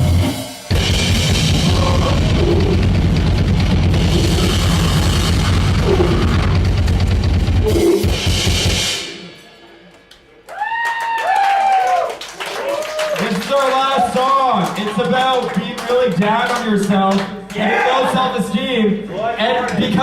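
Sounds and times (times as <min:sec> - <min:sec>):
fast drums and distorted noise: 0:00.0 - 0:09.4.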